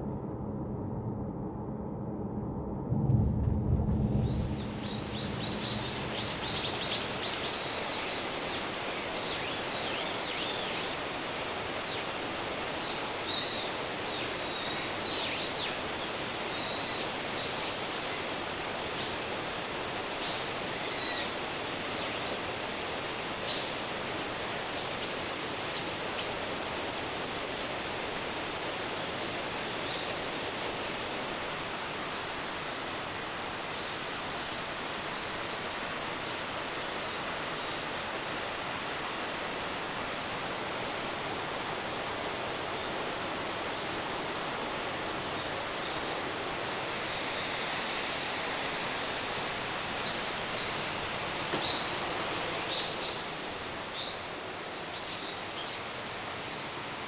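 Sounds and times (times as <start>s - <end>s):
bird chirping: 4.2s - 10.8s
waterfall roaring: 4.2s - 57.0s.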